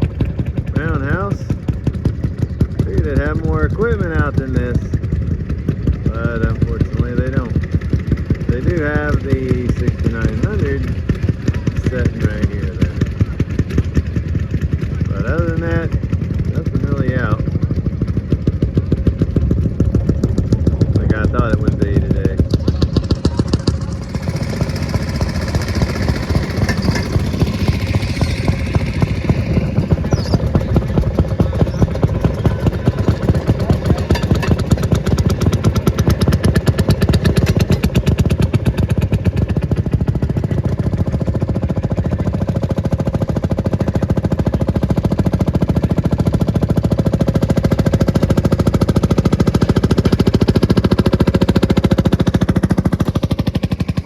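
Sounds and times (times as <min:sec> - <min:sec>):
large engine running: 0:00.0 - 0:54.0.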